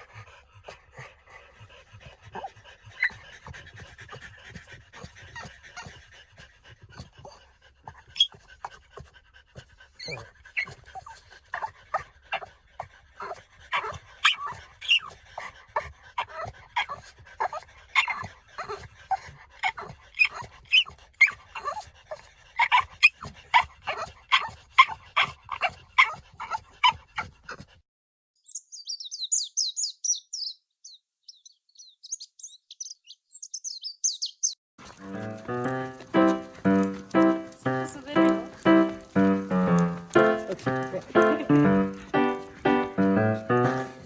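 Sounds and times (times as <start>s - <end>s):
dog whining and yipping: 8.1s - 8.4s, 10.0s - 11.7s, 13.2s - 15.5s, 16.2s - 27.6s.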